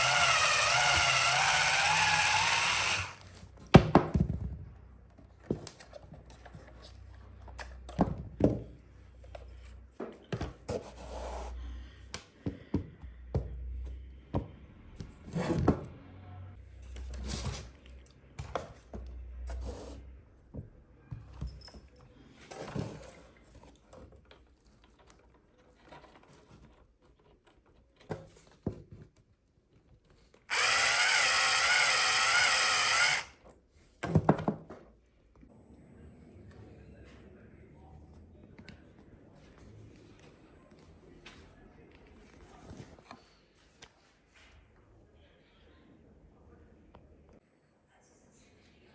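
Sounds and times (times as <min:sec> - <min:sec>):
small electric toy motors: 0:00.0 - 0:03.3, 0:30.5 - 0:33.4.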